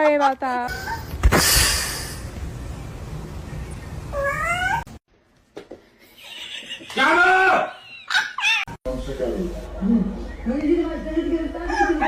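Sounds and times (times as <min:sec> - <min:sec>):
steady noisy hiss: 0:01.1 - 0:04.2.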